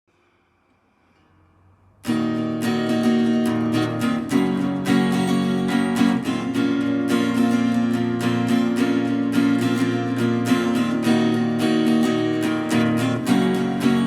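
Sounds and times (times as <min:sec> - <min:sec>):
acoustic guitar strummed: 0:02.0 - 0:14.0.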